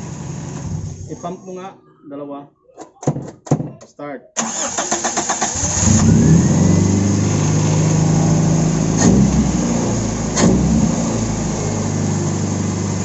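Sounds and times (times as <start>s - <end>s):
car engine cranking and idling: 4.4s - 13.0s.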